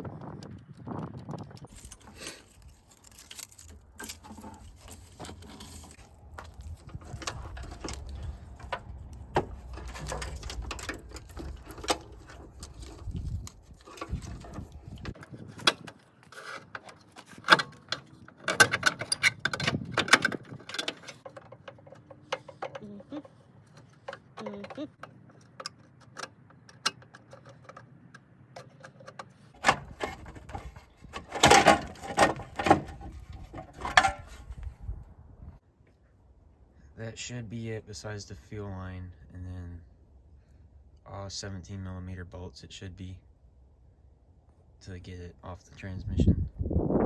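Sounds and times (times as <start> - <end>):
clinks of metal tools: 1.6 - 6.0.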